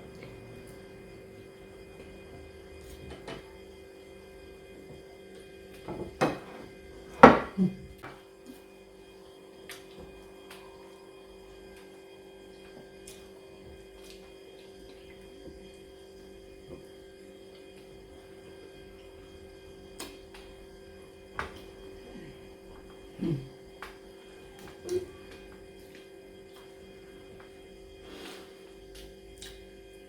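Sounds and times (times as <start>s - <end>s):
electrical hum: 0.0s - 30.0s
dishes clattering: 5.9s - 7.6s.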